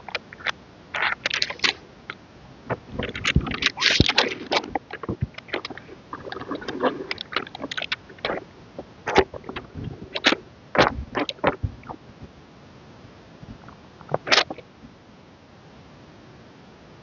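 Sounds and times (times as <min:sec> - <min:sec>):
paper and plastic rustling: 0:02.9 - 0:08.4.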